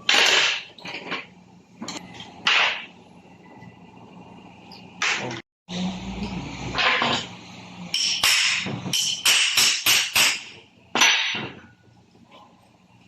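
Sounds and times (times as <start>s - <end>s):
hammer striking metal: 7.9s - 11.7s.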